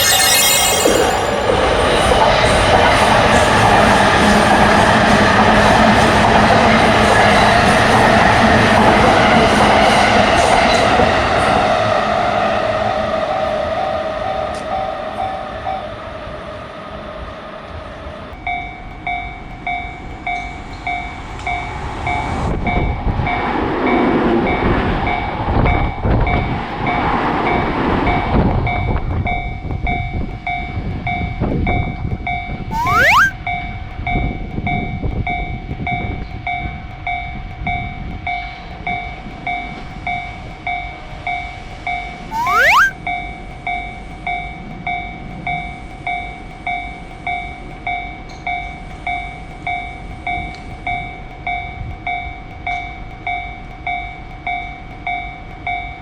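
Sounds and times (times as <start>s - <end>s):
steady ringing tone: 0.0s - 1.8s
railroad crossing bell ringing: 0.0s - 2.2s
rising sweep with sharp burst: 32.7s - 33.3s, 42.3s - 43.0s.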